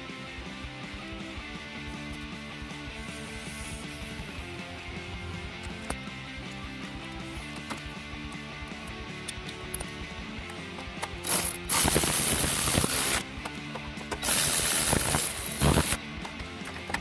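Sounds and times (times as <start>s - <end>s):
guitar music: 0.0s - 17.0s
power ratchet wrench hissing: 3.0s - 4.4s, 11.2s - 13.3s, 14.1s - 16.0s.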